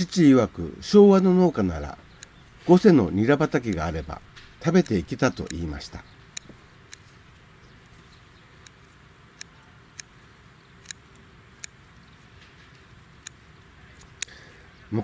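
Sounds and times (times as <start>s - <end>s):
faint steady hiss: 0.0s - 15.0s
scissors snipping: 3.6s - 5.7s.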